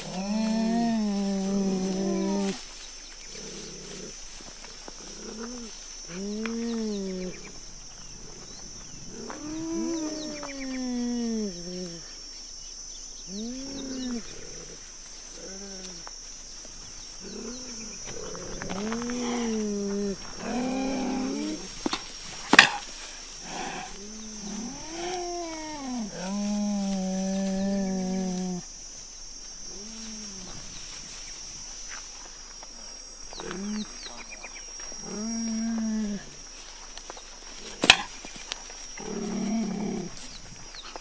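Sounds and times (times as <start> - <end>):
cheetah moaning calls: 0.0 - 2.6, 4.9 - 12.2, 13.3 - 16.1, 17.2 - 21.9, 23.4 - 28.7, 39.0 - 40.5.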